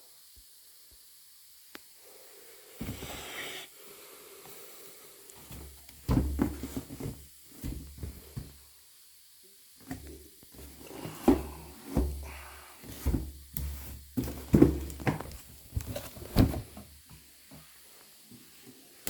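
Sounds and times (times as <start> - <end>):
bottle and packaging being handled: 5.4 - 8.6, 9.8 - 17.0.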